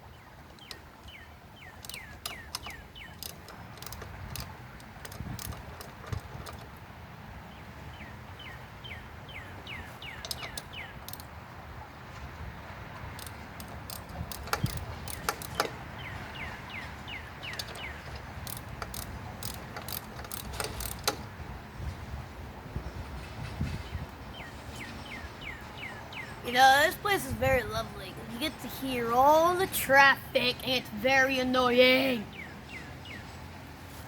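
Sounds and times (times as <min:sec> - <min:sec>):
low traffic rumble: 0:00.0 - 0:34.0
metallic clicks of hand tools: 0:01.8 - 0:06.7, 0:10.2 - 0:11.3, 0:13.0 - 0:15.8, 0:17.4 - 0:21.3.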